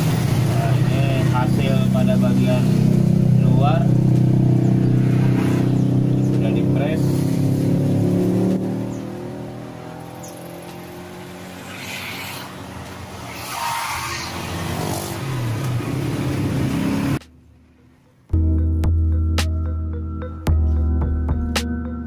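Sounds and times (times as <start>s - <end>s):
background music: 17.2s - 22.0s.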